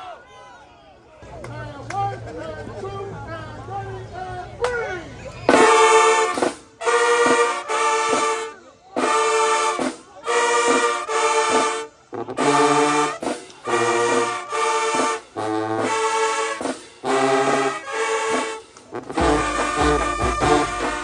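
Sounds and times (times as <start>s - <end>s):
low brass bass notes: 5.5s - 21.0s
marching band brass chords: 5.5s - 21.0s.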